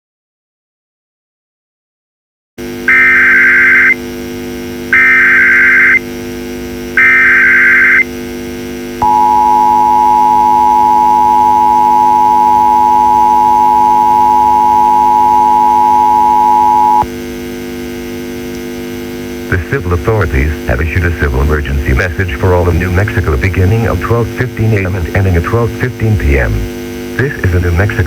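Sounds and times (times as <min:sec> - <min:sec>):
digital data bursts: 0:02.9 - 0:04.0, 0:05.0 - 0:06.0
two-tone attention signal: 0:02.9 - 0:04.0, 0:05.0 - 0:06.0, 0:07.0 - 0:08.1, 0:09.0 - 0:17.1
low hum: 0:09.0 - 0:17.1, 0:18.0 - 0:28.0.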